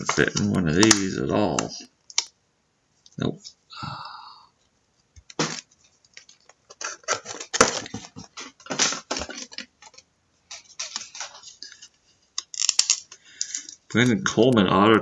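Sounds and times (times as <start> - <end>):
cards rustling and scraping: 0.0 - 2.3, 5.3 - 14.1.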